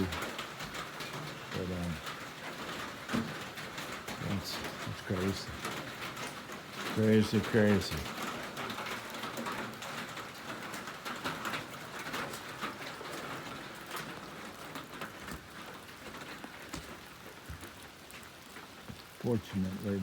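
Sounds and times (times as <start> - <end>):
floodwater rushing and splashing: 0.0 - 20.0.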